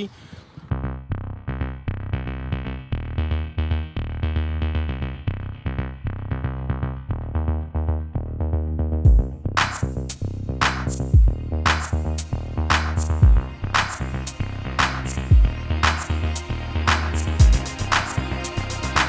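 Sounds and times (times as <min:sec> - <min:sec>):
electronic music with synthesizer: 0:10.9 - 0:19.0.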